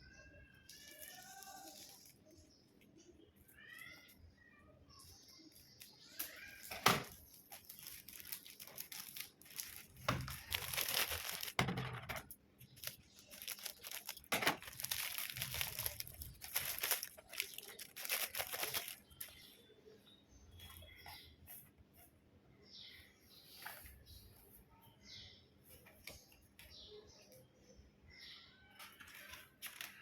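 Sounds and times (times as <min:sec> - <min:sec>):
packaging tearing and rustling: 0:00.7 - 0:02.2, 0:06.2 - 0:19.4, 0:29.0 - 0:30.0.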